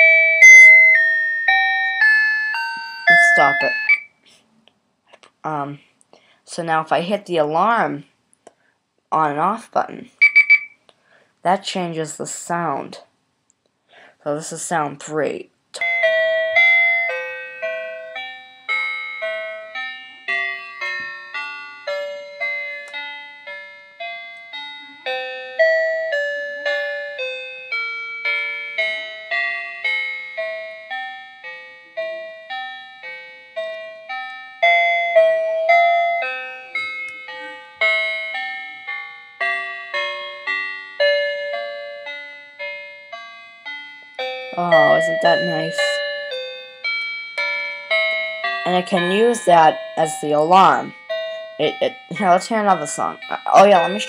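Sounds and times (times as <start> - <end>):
electronic music box tune: 0.0 - 4.2, 10.2 - 10.8, 15.8 - 54.0.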